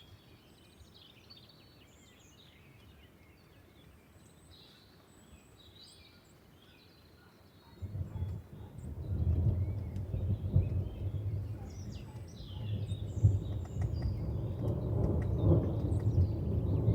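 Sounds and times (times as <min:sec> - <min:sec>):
birds chirping faintly: 0:00.0 - 0:16.9
rolling thunder rumble: 0:07.8 - 0:16.9
storm ambience: 0:07.8 - 0:16.9.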